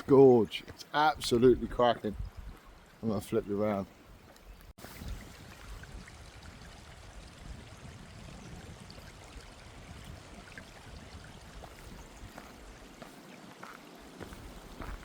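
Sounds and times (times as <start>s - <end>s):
stream rushing over rocks: 4.9s - 15.0s.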